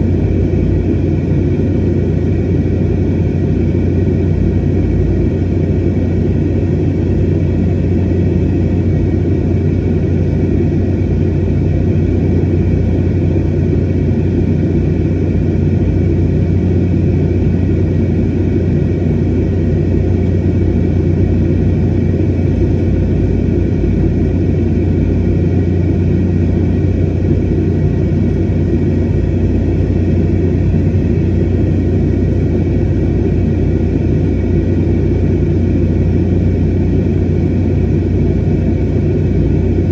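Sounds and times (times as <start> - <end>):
airliner cabin rumble: 0.0 - 39.9.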